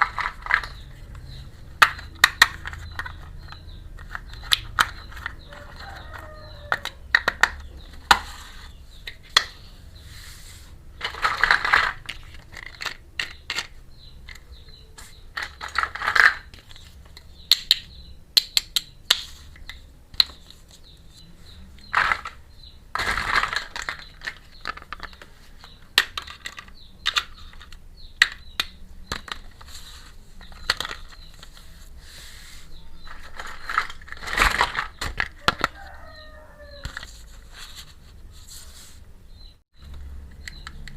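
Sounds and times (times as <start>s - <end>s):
plastic toy pieces clicking: 0.0s - 8.3s, 11.0s - 14.6s, 15.3s - 20.4s, 23.0s - 29.7s, 30.4s - 31.6s.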